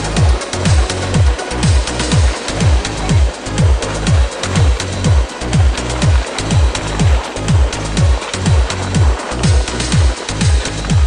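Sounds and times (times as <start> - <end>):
kick drum: 0.2 - 11.0
electronic dance music: 1.2 - 8.7.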